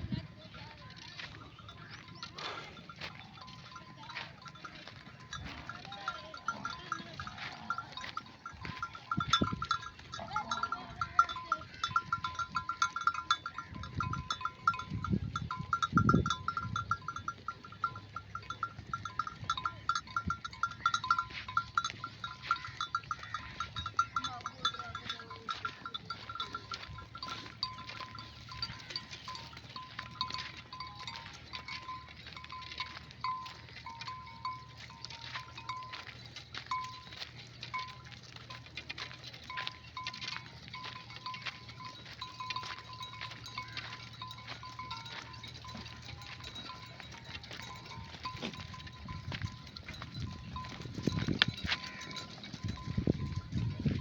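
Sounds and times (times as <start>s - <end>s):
sheep bells clinking: 0.0s - 54.0s
sheep bleating: 28.2s - 29.5s, 51.6s - 52.5s.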